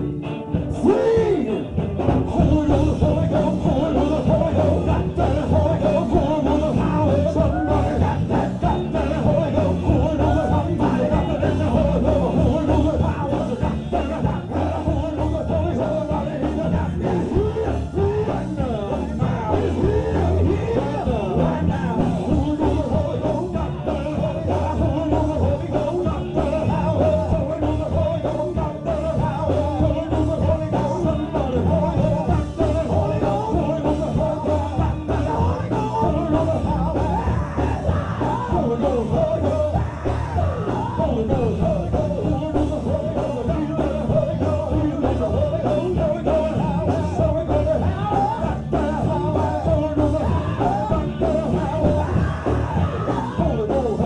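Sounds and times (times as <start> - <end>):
live gospel band playing: 0.0 - 54.0
voices singing and shouting: 0.0 - 54.0.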